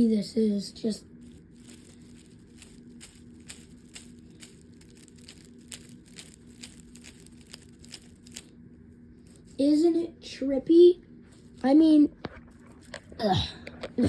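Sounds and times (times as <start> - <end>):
faint hum: 0.0 - 14.0
toy ball crinkling and clicking: 1.0 - 8.6, 9.2 - 9.8, 11.3 - 14.0.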